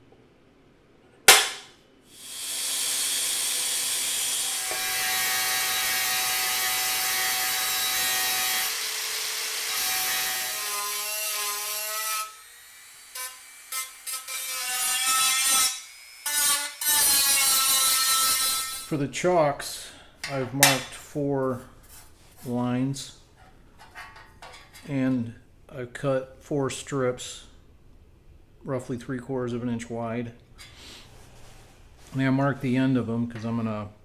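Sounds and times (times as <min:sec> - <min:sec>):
power tool cutting sheet steel: 0:02.1 - 0:18.9.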